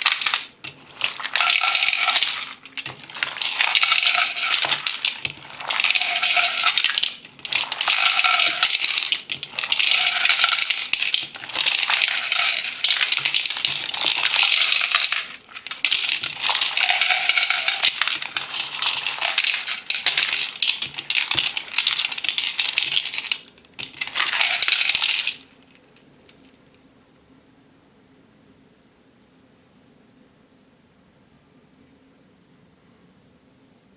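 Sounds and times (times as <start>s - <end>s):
beads clicking in squeezed slime: 0.0s - 25.4s.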